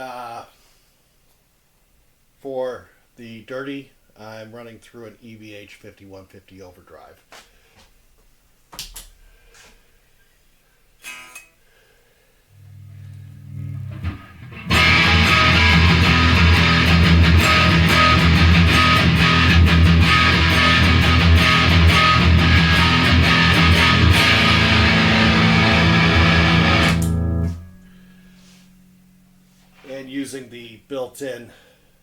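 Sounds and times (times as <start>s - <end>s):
distorted electric guitar: 12.6s - 29.9s.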